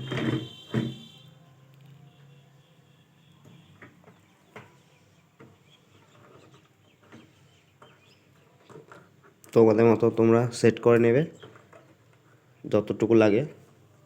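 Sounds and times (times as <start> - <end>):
faint high chirping calls: 0.0 - 8.8.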